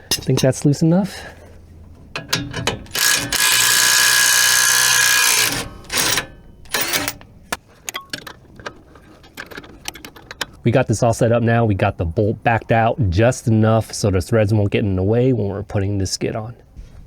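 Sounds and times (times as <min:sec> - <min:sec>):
metallic clicks of tools: 0:00.0 - 0:00.7, 0:01.4 - 0:10.6
cordless power tool running: 0:01.9 - 0:07.6.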